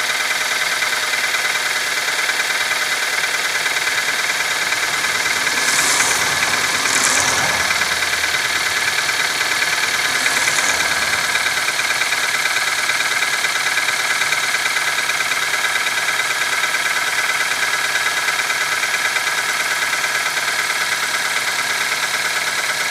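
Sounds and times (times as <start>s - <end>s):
brief hisses: 3.4s - 13.3s.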